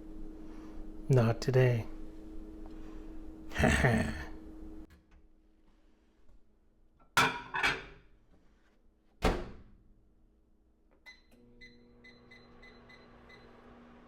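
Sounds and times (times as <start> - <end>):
microwave humming: 0.0 - 5.4, 10.9 - 14.0.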